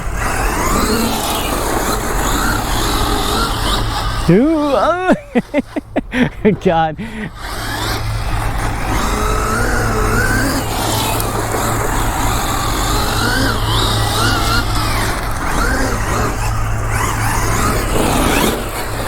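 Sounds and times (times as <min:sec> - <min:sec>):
electric motor whining: 0:00.0 - 0:19.0
tires sliding on pavement: 0:00.0 - 0:19.0.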